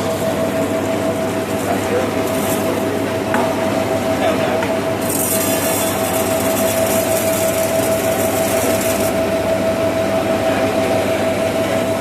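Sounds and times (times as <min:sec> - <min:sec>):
rice milling machine running: 0:00.0 - 0:12.0.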